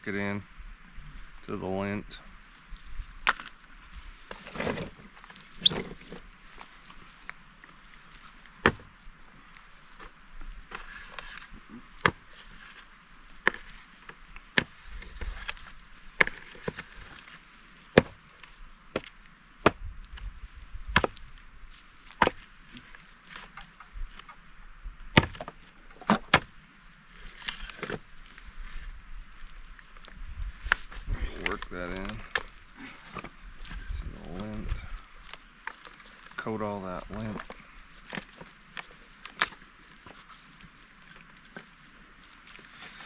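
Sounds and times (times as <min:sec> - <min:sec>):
axe chopping wood: 0:08.6 - 0:08.9, 0:18.0 - 0:18.2, 0:21.0 - 0:21.2, 0:22.2 - 0:22.4, 0:25.2 - 0:25.5, 0:26.1 - 0:26.5.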